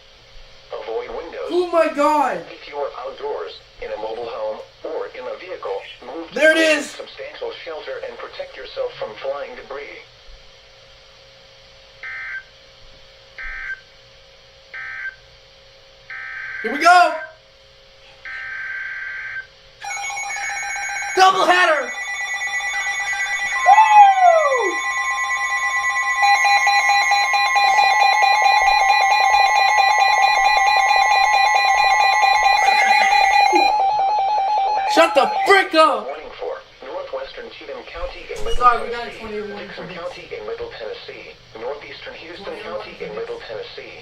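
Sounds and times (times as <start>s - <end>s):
faint steady hum: 0.0s - 44.0s
digital data tone bursts: 19.1s - 35.6s.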